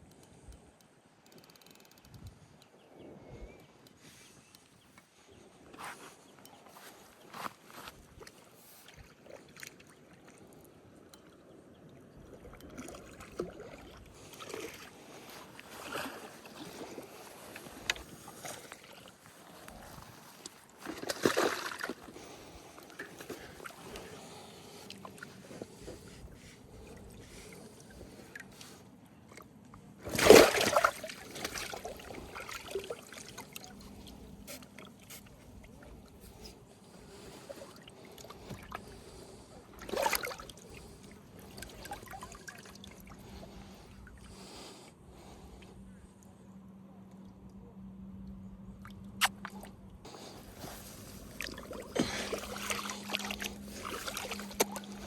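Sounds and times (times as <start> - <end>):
small clicks and knocks: 1.2 - 2.3
water splashing and sloshing: 6.8 - 45.7, 48.2 - 55.0
fish splashing at water surface: 30.1 - 33.9, 51.1 - 55.0.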